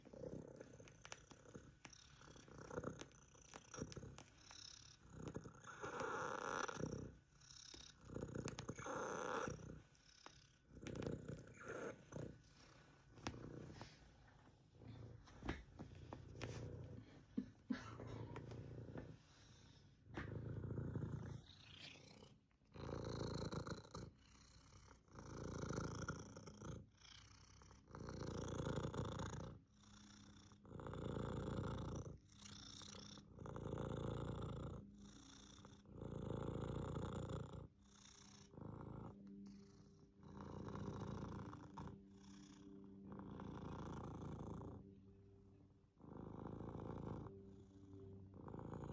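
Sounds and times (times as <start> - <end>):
cat purring with wheezy rasp: 0.0 - 48.9.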